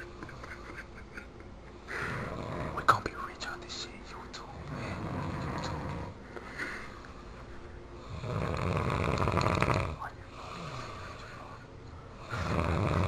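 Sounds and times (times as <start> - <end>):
man snoring loudly: 2.0 - 2.9, 4.7 - 6.2, 8.0 - 11.1, 12.2 - 13.0.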